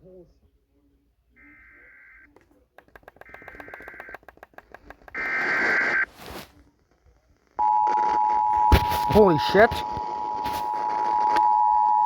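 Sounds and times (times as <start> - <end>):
rapid clicking: 2.8 - 5.3
burst of static: 5.2 - 6.4.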